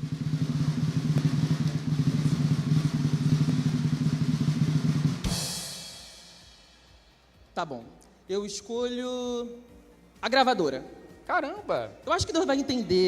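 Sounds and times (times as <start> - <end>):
drum roll: 0.0 - 7.0
cymbal crash ringing: 0.0 - 7.4.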